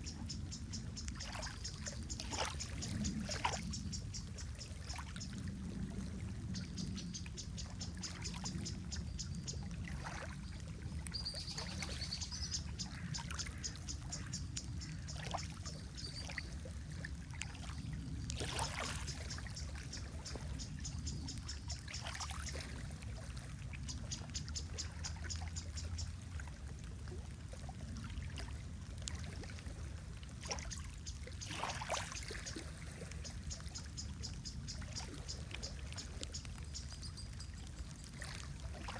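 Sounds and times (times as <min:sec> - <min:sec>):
lake water lapping at shore: 0:00.0 - 0:38.9
soft splashes: 0:01.1 - 0:38.9.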